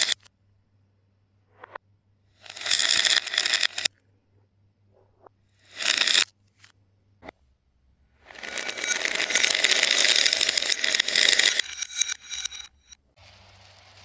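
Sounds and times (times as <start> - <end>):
reversed rattling of small objects: 0.0 - 0.3, 2.4 - 3.9, 5.0 - 6.7, 8.2 - 13.0.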